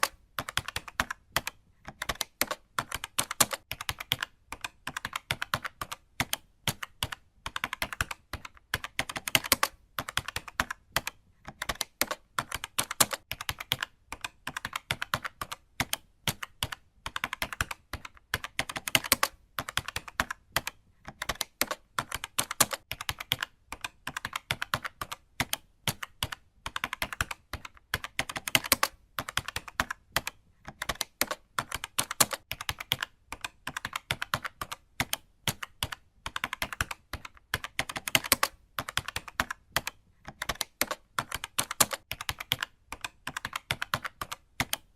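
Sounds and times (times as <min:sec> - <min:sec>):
keyboard typing clicks: 0:00.0 - 0:44.9.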